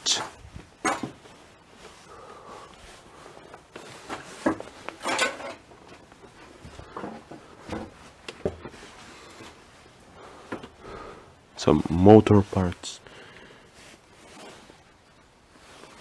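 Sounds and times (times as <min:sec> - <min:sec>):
light knocks and rustles: 0:03.5 - 0:09.6.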